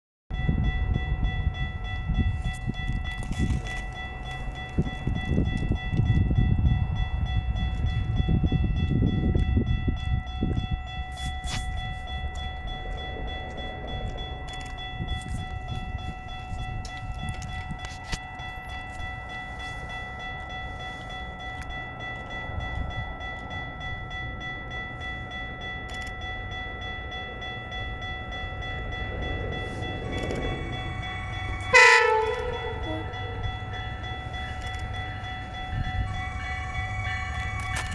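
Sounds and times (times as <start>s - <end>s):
steady ringing tones: 0.3s - 37.9s
train rumbling by: 0.3s - 37.9s
short train horn blast: 31.4s - 33.5s.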